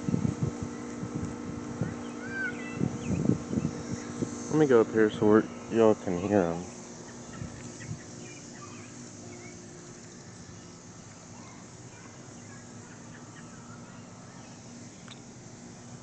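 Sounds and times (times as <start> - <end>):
cicadas droning: 0.0 - 16.0
low steady hum: 0.0 - 16.0
faint bird chirps: 7.0 - 9.7, 10.4 - 15.3.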